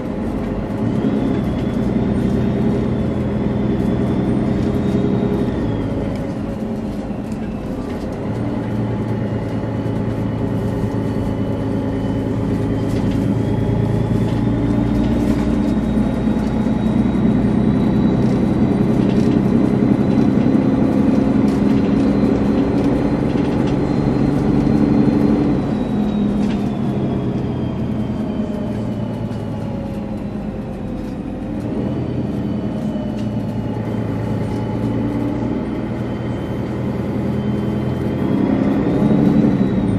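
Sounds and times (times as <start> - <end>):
bus diesel engine running: 0.0 - 39.9
turbocharger whistle: 20.6 - 29.2.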